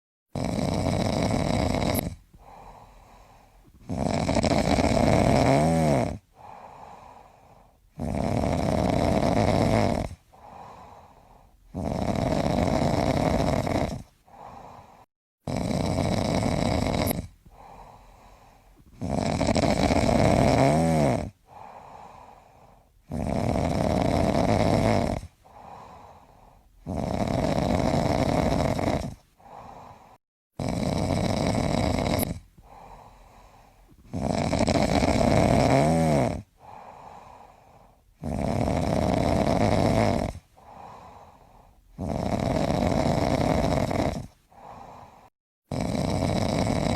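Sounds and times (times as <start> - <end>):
person snoring: 0.3 - 46.9
faint breath: 2.3 - 3.8, 6.3 - 7.9, 10.3 - 11.7, 14.2 - 15.1, 17.4 - 18.9, 21.4 - 23.0, 25.4 - 26.8, 29.3 - 30.2, 32.6 - 34.0, 36.5 - 38.2, 40.4 - 41.9, 44.4 - 45.3.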